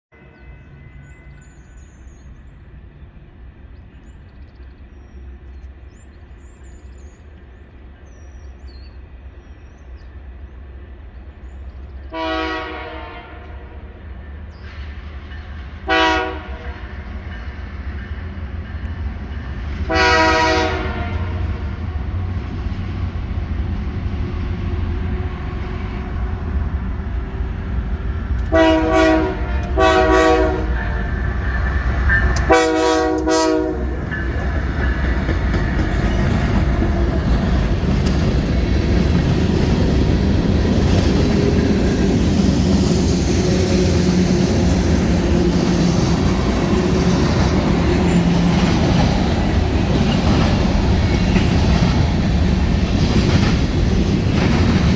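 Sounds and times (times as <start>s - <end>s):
low train rumble: 0.1s - 54.9s
locomotive air horn blasts: 12.1s - 13.8s, 15.8s - 16.8s, 19.9s - 21.5s, 28.5s - 34.1s
wheels clacking over rail joints: 24.8s - 54.9s.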